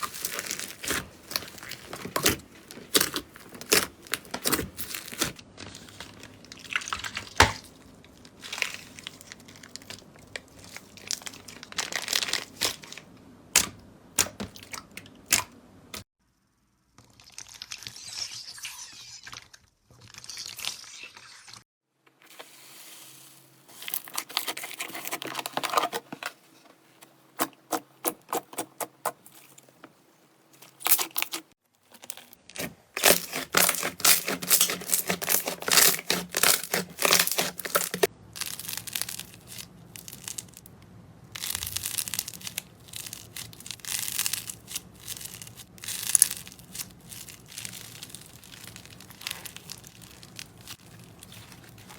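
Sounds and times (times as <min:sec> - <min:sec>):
slime crackling and tearing: 0:00.0 - 0:13.0, 0:30.8 - 0:40.7, 0:41.4 - 0:51.9.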